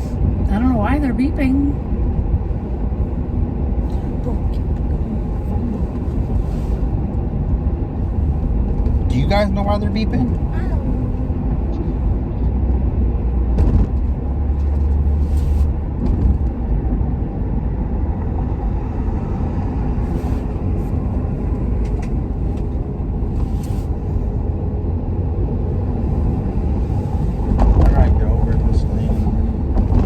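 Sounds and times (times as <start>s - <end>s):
road and engine rumble in truck cab: 0.0s - 30.0s.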